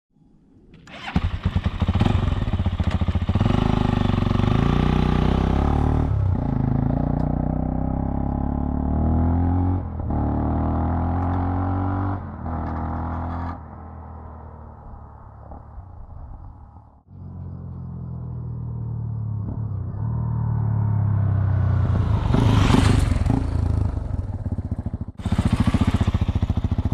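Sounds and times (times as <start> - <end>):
motorcycle engine starting and revving: 0.8 - 13.7, 18.6 - 26.9.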